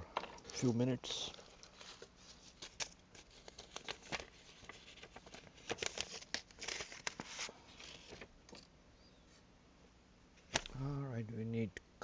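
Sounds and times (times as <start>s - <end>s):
rustling and crinkling: 0.0s - 8.7s.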